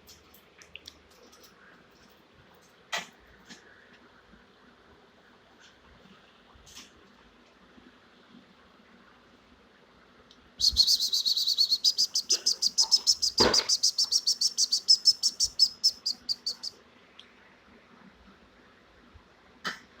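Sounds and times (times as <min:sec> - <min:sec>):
lovebird chirping: 0:10.6 - 0:16.8.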